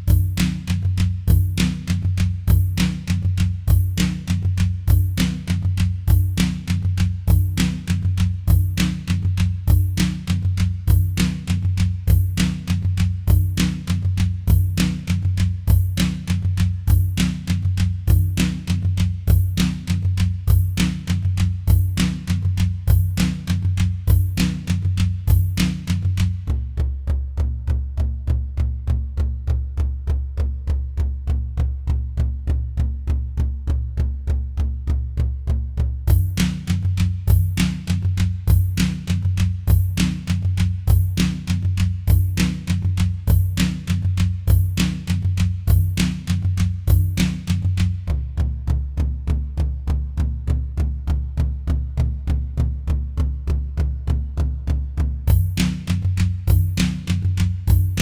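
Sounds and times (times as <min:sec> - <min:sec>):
electronic drum pattern: 0:55.3 - 0:58.0.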